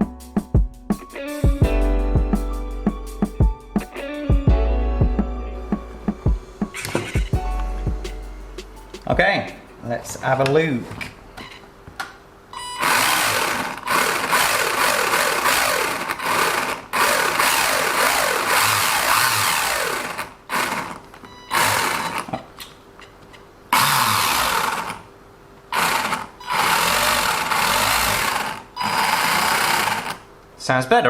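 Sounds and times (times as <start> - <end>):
falling motor whine: 12.6 - 22.3, 23.8 - 25.0, 25.7 - 30.2
electric motor throttle bursts: 12.8 - 22.3, 23.7 - 25.1, 25.7 - 30.3.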